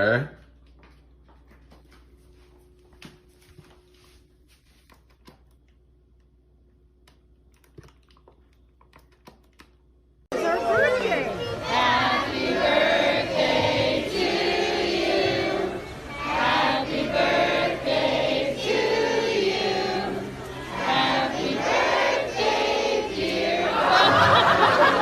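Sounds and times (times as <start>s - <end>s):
voices singing together: 10.3s - 25.0s.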